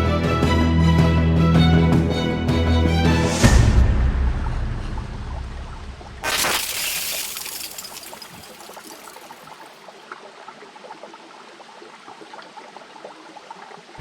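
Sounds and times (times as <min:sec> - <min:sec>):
small stream trickling: 0:06.2 - 0:14.0
water drips and splashes: 0:06.2 - 0:14.0.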